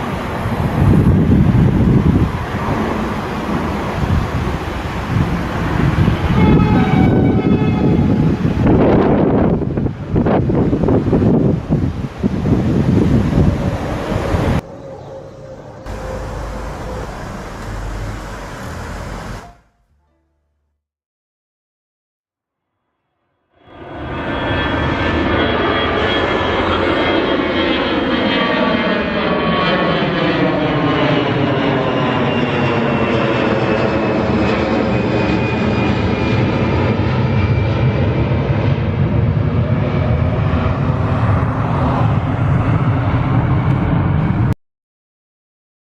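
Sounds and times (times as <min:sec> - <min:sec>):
jet engines running: 0:00.0 - 0:19.6, 0:23.8 - 0:44.6
whining tones falling in pitch: 0:14.6 - 0:20.0
low rumble: 0:15.4 - 0:19.5.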